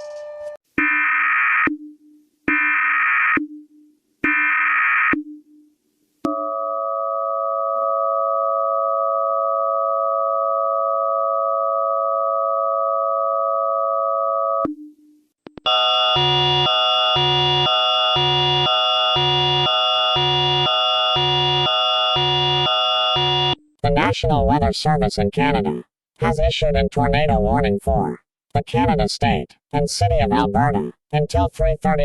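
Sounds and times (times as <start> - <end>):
two-tone attention signal: 15.7 - 23.6
data tone bursts: 16.2 - 23.6.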